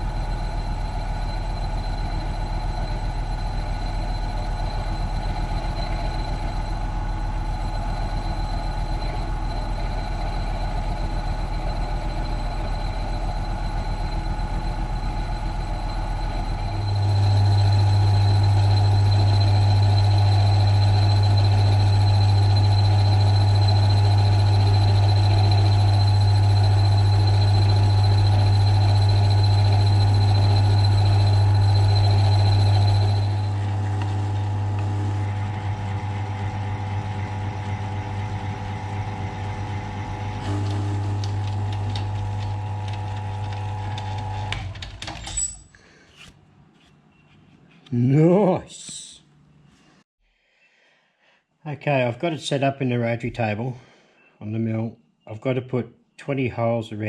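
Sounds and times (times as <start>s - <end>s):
thin high whine: 0.0s - 44.5s
drill motor humming: 0.0s - 44.8s.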